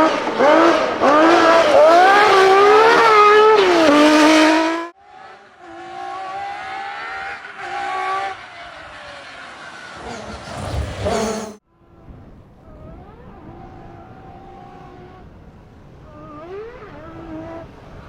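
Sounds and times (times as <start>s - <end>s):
car engine revving: 0.0s - 11.6s.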